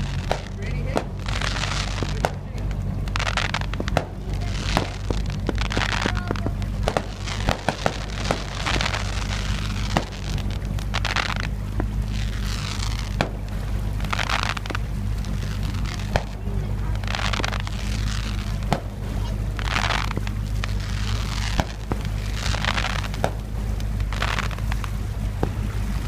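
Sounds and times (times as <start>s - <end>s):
fireworks popping and crackling: 0.0s - 26.0s
steady low hum: 0.0s - 26.0s.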